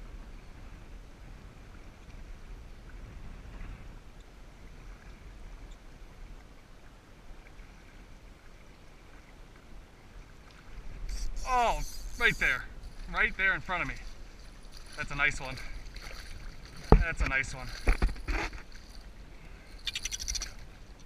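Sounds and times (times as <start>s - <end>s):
wind rumble on microphone: 0.0s - 19.7s
faint ticks: 5.6s - 5.9s, 19.7s - 21.0s
creek water rushing: 10.3s - 19.8s.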